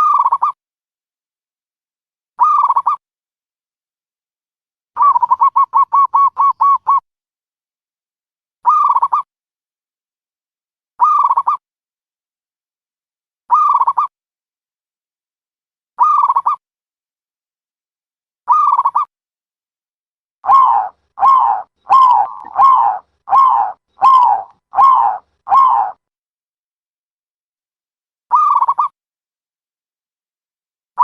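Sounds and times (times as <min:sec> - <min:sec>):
dove calling: 0:05.0 - 0:07.0, 0:20.4 - 0:26.0.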